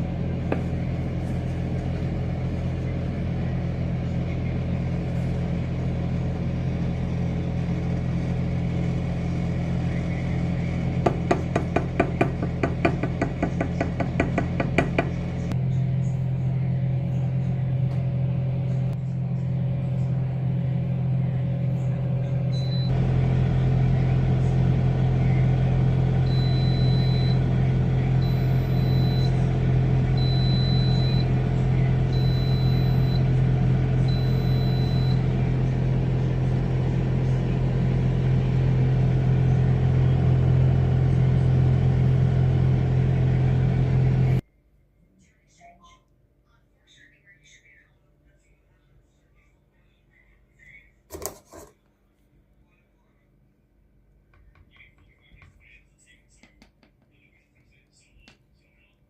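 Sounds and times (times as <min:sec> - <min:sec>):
kitchen appliance humming: 0:00.0 - 0:44.4
appliance timer beeps: 0:22.5 - 0:23.0, 0:26.0 - 0:36.1.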